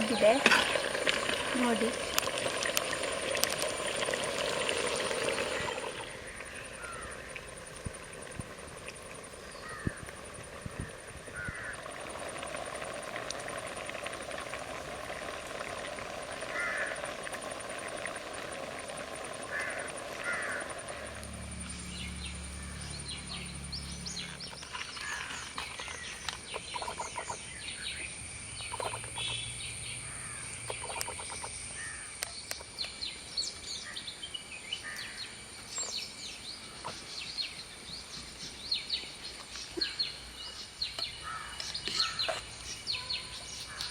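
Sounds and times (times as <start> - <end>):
birds chirping and calling: 21.8 - 33.0, 39.8 - 43.9.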